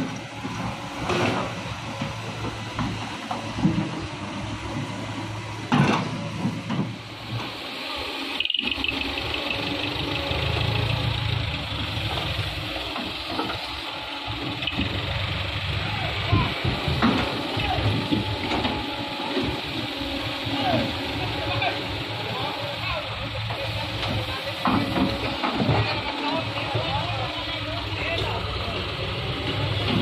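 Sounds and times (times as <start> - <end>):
heavy diesel engines running: 0.0 - 30.0
hiss: 7.0 - 14.8.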